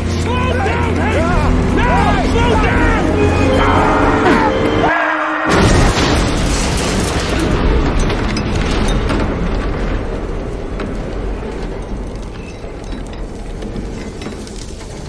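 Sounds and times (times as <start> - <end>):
heavy rumbling from car crash: 0.0 - 15.0
debris clicking and rattling: 5.6 - 15.0.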